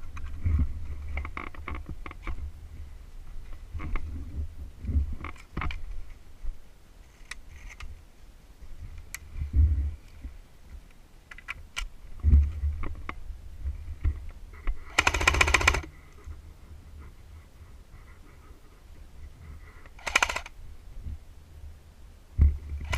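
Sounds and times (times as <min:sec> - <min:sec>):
airsoft gun full-auto burst: 0:14.9 - 0:15.9, 0:20.0 - 0:20.5
sharp clicks: 0:14.9 - 0:15.9, 0:19.9 - 0:20.5.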